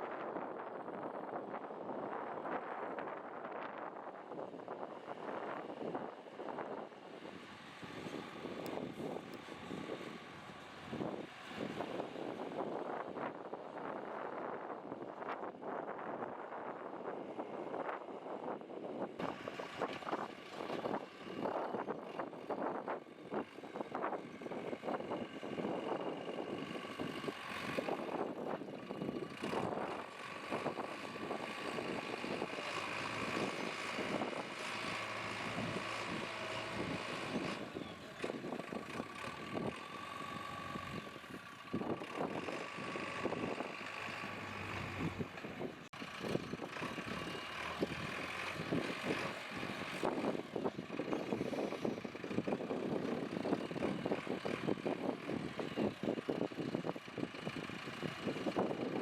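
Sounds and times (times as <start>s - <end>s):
diesel engine running: 16.9s - 59.0s.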